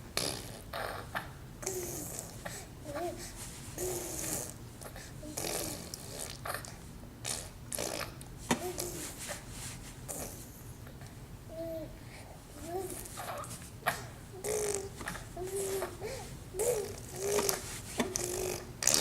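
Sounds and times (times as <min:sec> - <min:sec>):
child making rasping mouth noises: 0:12.7 - 0:16.0, 0:16.6 - 0:19.0.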